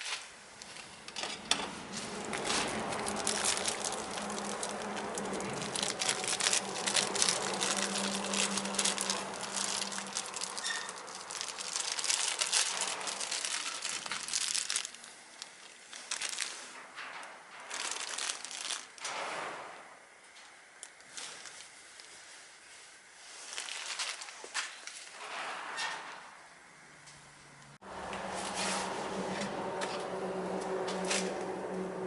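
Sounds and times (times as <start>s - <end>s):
crinkling and crackling clicks: 0.6s - 19.2s, 20.3s - 22.2s, 23.4s - 25.1s.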